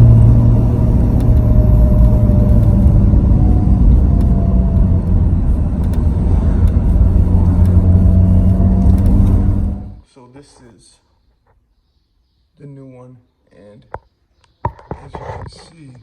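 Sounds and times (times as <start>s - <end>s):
car engine droning: 0.0s - 10.0s.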